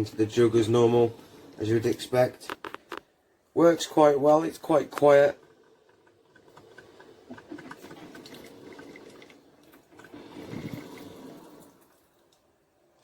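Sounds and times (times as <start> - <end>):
coffee machine sputtering and gurgling: 3.8 - 12.0.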